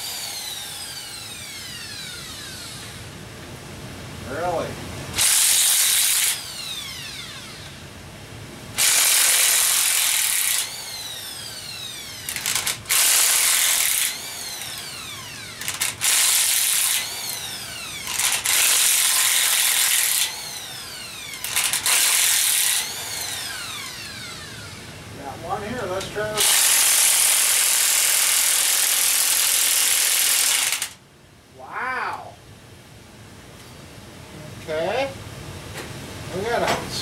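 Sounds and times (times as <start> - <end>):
motor whining down: 0.0 - 3.0, 5.2 - 7.8, 8.8 - 25.0.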